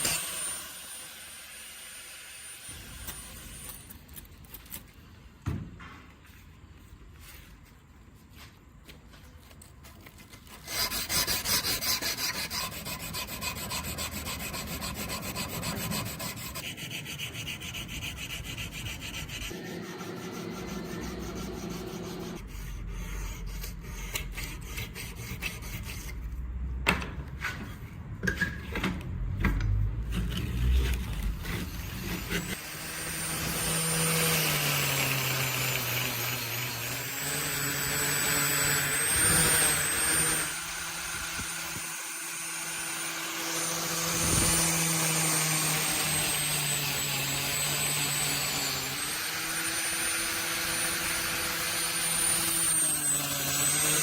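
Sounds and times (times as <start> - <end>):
rasping and rubbing strokes: 10.3 - 26.4, 30.0 - 54.0.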